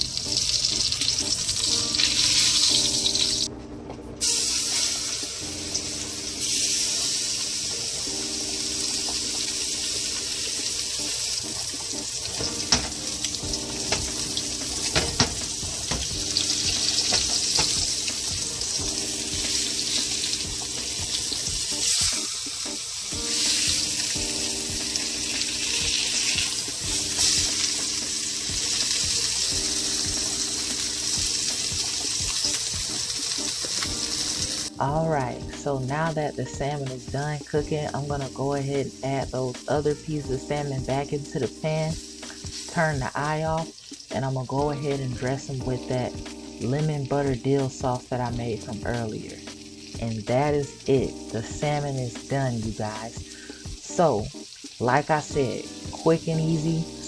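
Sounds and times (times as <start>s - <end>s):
fish sizzling in hot oil: 0.0s - 3.5s, 4.2s - 57.0s.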